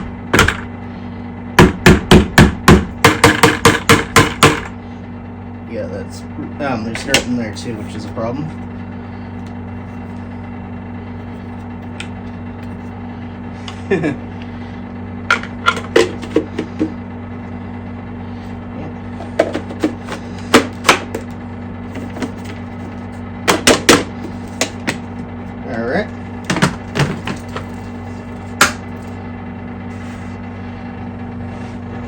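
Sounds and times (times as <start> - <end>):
steady low hum: 0.0 - 32.0
plastic vacuum parts knocking: 15.3 - 17.0, 19.2 - 21.3, 26.5 - 27.6.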